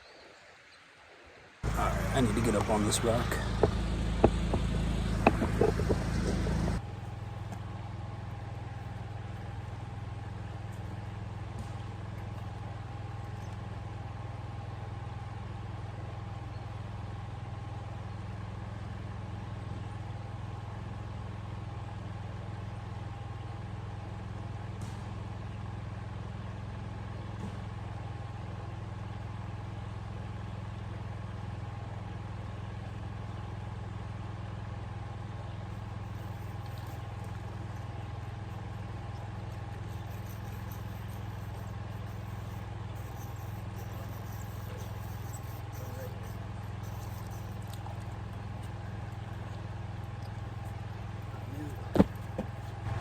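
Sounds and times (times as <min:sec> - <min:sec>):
steady low hum: 0:01.6 - 0:13.6, 0:35.6 - 0:53.0
loud rustling: 0:51.4 - 0:53.0.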